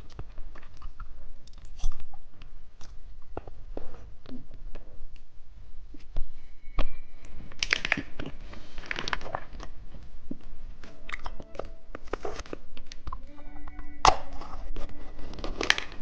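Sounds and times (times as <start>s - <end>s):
plastic wrapper crinkling: 7.6s - 8.2s, 8.8s - 9.8s, 14.4s - 16.0s.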